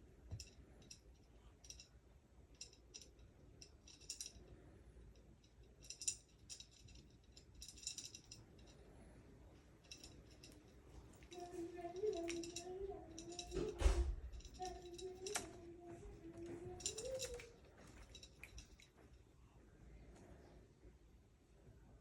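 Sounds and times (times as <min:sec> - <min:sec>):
cat toy clicking rattles: 0:02.6 - 0:04.5, 0:05.2 - 0:08.8, 0:09.9 - 0:15.6, 0:16.3 - 0:19.0.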